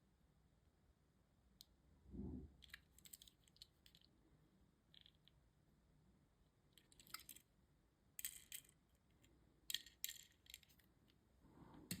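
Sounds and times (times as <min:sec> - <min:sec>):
toy car and packaging rattling: 0:02.6 - 0:04.1, 0:08.2 - 0:08.8, 0:09.7 - 0:10.9.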